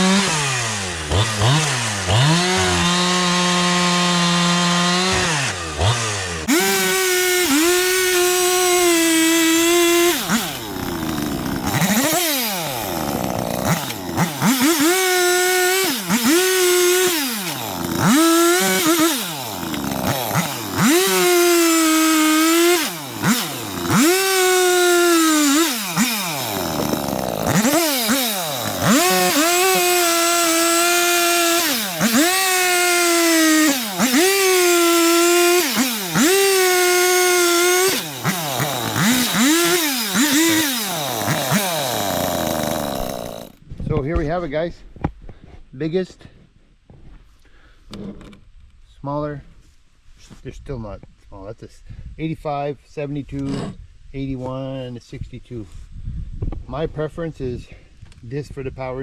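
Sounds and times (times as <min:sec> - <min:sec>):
chainsaw revving: 0:00.0 - 0:43.6.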